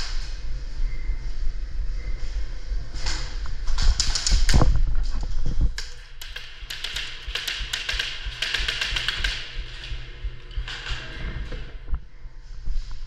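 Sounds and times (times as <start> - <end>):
airsoft gunfire clicks and snaps: 5.8 - 11.6.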